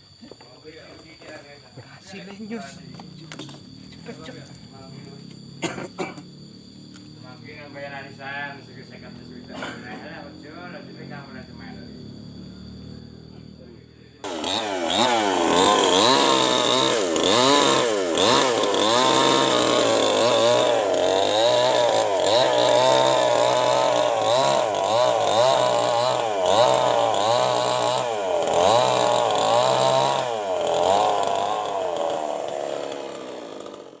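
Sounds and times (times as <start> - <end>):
chainsaw cutting through wood: 2.2 - 7.6, 14.2 - 34.0.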